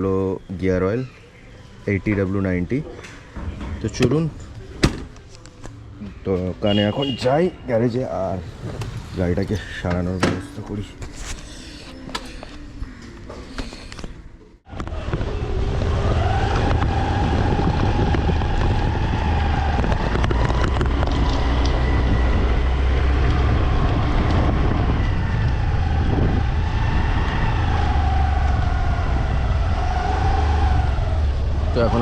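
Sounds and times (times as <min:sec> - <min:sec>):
wind buffeting microphone: 0:14.8 - 0:32.0.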